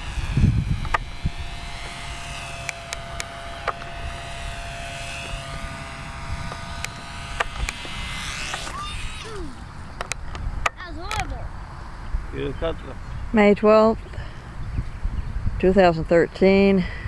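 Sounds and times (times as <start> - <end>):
model airplane motor whining: 0.0 - 11.2
sharp clicks: 2.6 - 4.2, 6.4 - 11.4.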